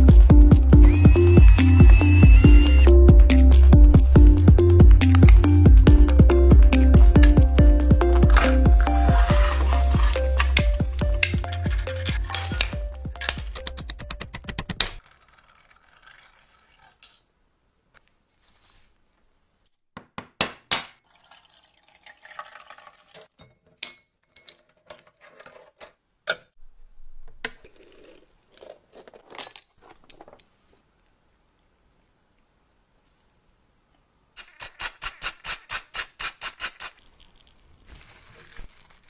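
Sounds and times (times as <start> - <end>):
music: 0.0 - 14.5
small metal parts clinking: 11.2 - 13.8, 27.8 - 30.5.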